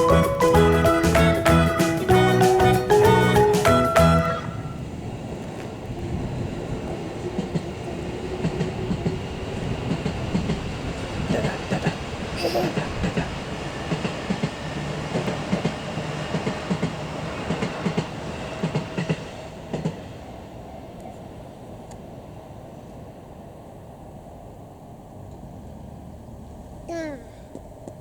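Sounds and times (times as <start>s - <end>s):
train wheels clacking over rail joints: 12.8s - 20.0s.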